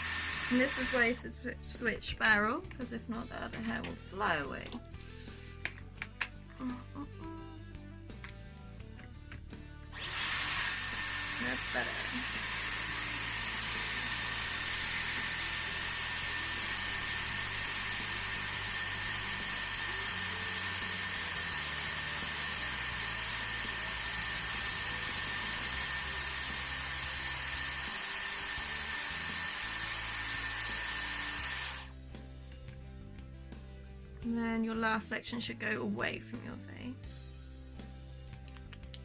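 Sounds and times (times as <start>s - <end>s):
hair styler air rush and whine: 0.0s - 1.2s, 9.9s - 32.0s.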